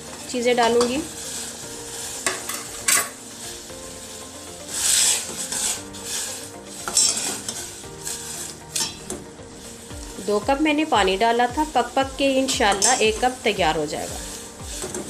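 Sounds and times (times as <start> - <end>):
water boiling in a pan: 0.0 - 15.0
spices clinking into a pan: 12.7 - 13.2.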